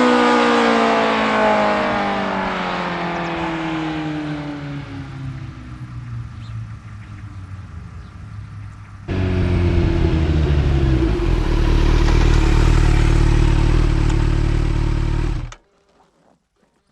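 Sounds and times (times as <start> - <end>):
motorcycle exhaust idling: 5.8 - 15.6.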